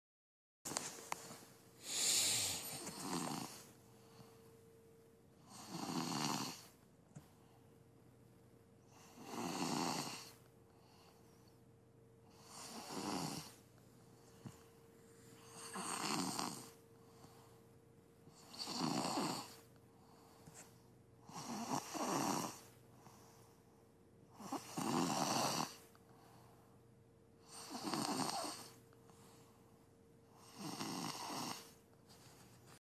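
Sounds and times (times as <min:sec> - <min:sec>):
person snoring: 0:01.8 - 0:03.7, 0:05.5 - 0:06.7, 0:08.9 - 0:10.4, 0:12.3 - 0:13.6, 0:15.5 - 0:16.8, 0:18.4 - 0:19.6, 0:21.3 - 0:22.7, 0:24.4 - 0:25.8, 0:27.4 - 0:28.8, 0:30.4 - 0:31.8.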